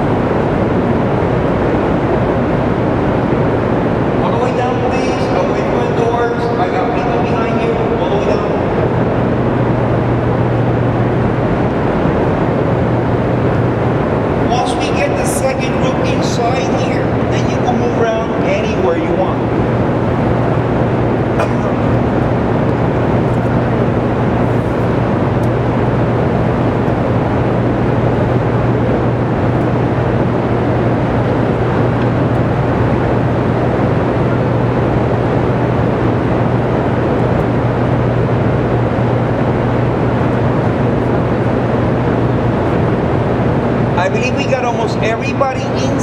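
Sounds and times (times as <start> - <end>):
generators humming: 0.0 - 46.0.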